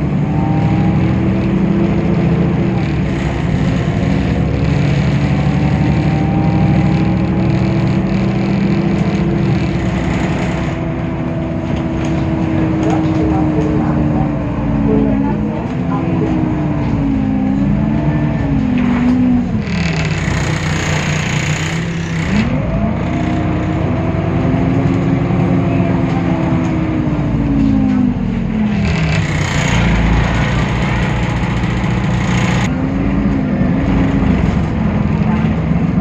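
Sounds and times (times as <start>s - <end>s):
bus diesel engine: 0.0s - 36.0s.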